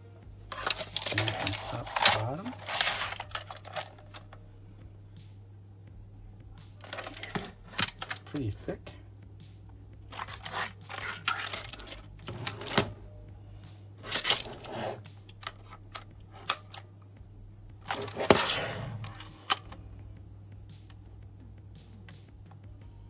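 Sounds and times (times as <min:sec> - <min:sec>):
rubbing scraping noises: 0:14.1 - 0:15.1, 0:18.0 - 0:19.4.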